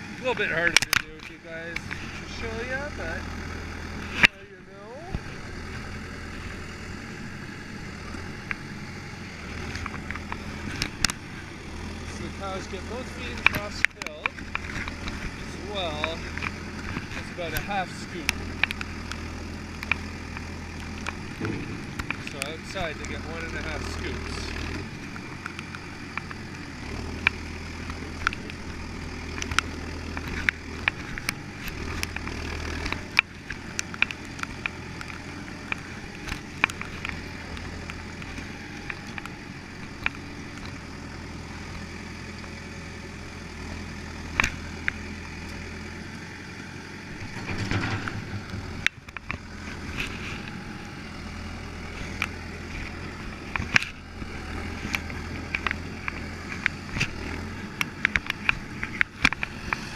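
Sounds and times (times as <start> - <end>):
tractor engine running: 0.0 - 59.9
clanks and knocks: 21.0 - 23.1, 47.2 - 50.2.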